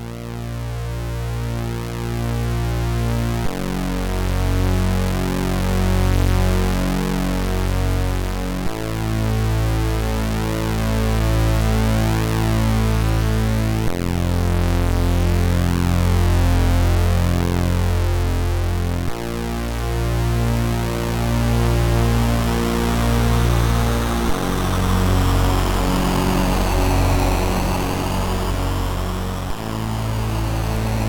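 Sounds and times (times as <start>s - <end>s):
synth bass: 0.0s - 31.0s
fast arpeggiated chords: 22.0s - 31.0s.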